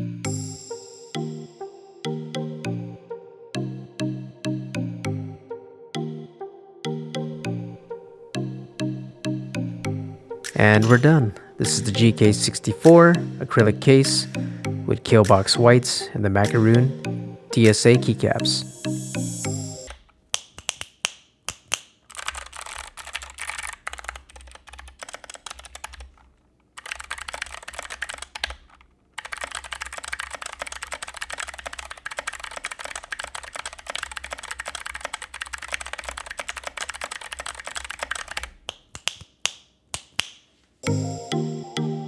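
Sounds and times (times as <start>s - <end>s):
typing on clicky mechanical keyboard: 21.7s - 39.2s.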